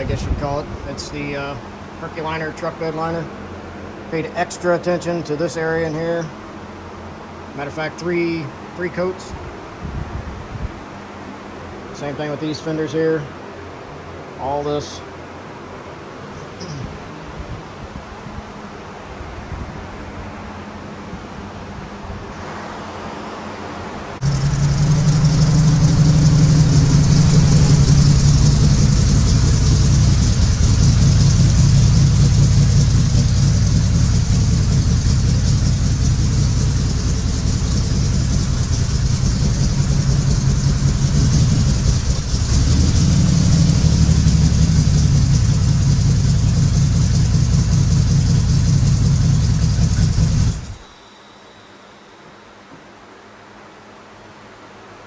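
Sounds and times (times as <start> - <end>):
car engine running: 24.2 - 50.9.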